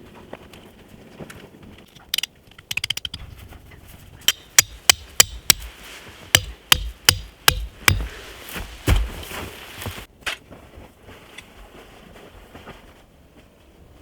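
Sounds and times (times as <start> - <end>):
rattle of clicks: 1.8 - 3.2
tool striking knocks: 4.3 - 5.7, 6.3 - 8.2.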